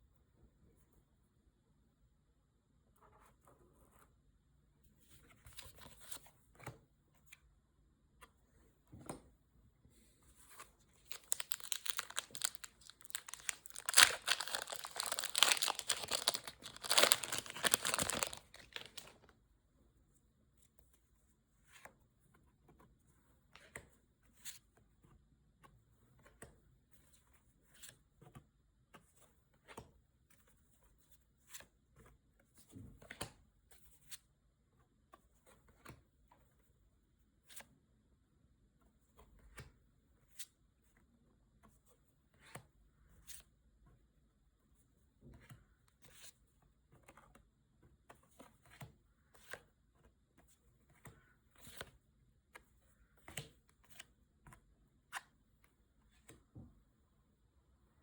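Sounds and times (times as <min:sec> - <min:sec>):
packaging torn and crinkled: 0:11.0 - 0:19.2.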